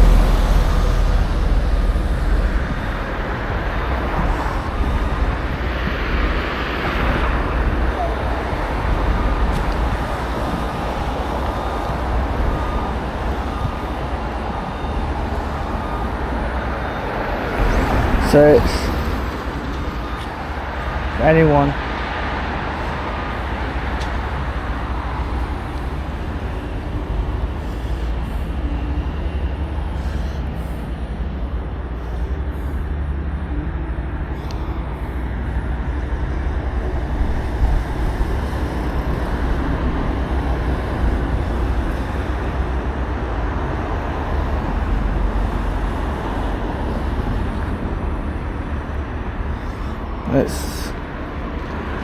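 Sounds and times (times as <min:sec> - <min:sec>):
wind rumble on microphone: 0:00.0 - 0:21.1
road traffic rumble: 0:00.0 - 0:52.0.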